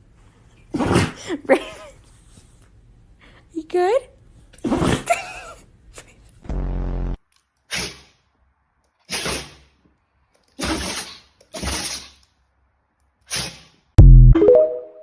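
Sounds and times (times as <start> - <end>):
dog sneezing: 0.7 - 1.2, 4.6 - 5.1, 7.7 - 8.2, 9.1 - 9.6, 10.6 - 12.2, 13.3 - 13.8.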